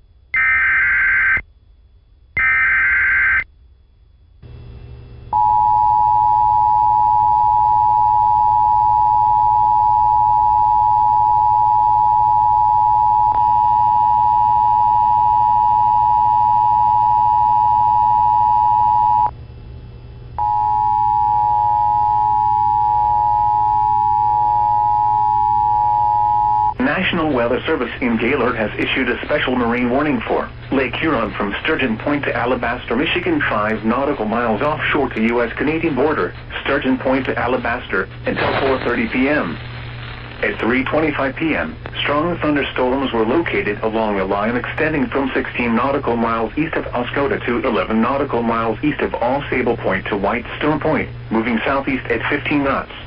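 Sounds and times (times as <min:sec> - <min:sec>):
low steady hum: 0:00.0 - 0:53.0
screeching digital data bursts: 0:00.4 - 0:01.4, 0:02.4 - 0:03.4
two-tone attention signal: 0:20.4 - 0:26.8.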